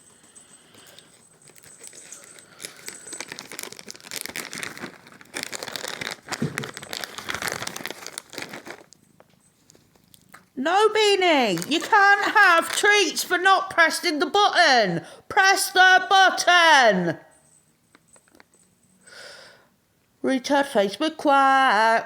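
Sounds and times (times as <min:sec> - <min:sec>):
plastic packet crinkling: 0:01.4 - 0:09.0, 0:11.4 - 0:13.3.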